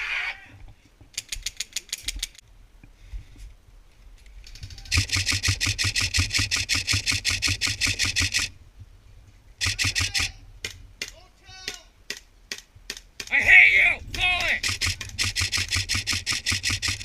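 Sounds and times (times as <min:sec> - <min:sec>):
airsoft gun firing bursts: 0:04.9 - 0:08.5, 0:09.6 - 0:10.3, 0:14.6 - 0:17.0.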